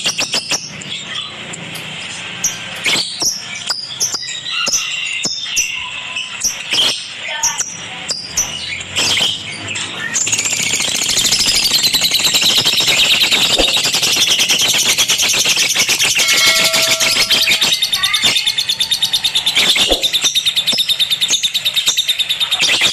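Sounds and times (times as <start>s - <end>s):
lovebird chattering: 2.5s - 22.9s
short steady tone: 16.2s - 17.8s.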